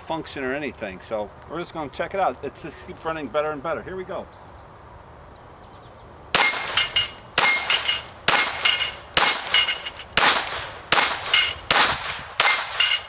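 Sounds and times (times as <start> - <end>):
pistol shots: 6.3 - 13.0
steel plate ringing: 6.4 - 13.0.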